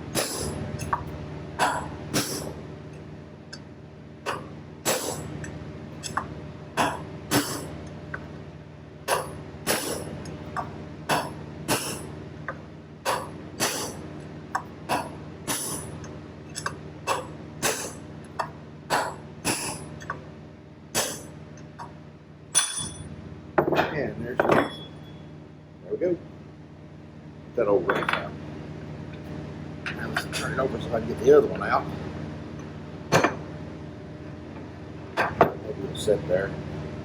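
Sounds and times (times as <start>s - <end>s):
steady low hum: 0.0s - 37.0s
hammer blows on metal: 13.1s - 14.0s.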